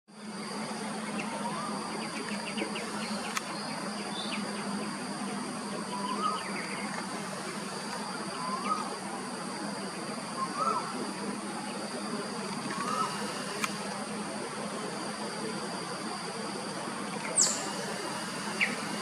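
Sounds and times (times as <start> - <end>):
high-pitched insect drone: 0.2 - 19.0
low steady hum: 0.2 - 19.0
bird rising-and-falling call: 12.6 - 13.9
bird chip notes: 17.4 - 19.0.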